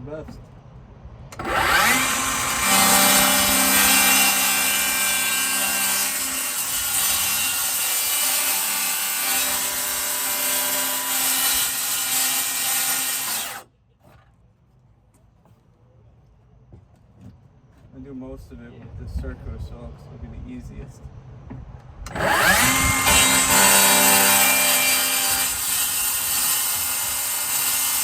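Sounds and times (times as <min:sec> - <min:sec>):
circular saw cutting: 0:01.4 - 0:13.6, 0:22.1 - 0:28.0.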